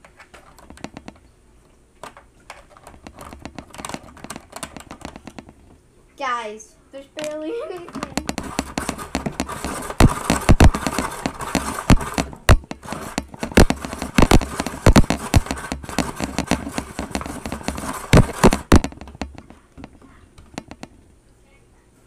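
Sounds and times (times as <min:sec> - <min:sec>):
plastic mechanism knocking: 0:00.0 - 0:01.2, 0:02.0 - 0:05.7, 0:07.2 - 0:21.0
ice grinding in hand crank: 0:07.8 - 0:18.9.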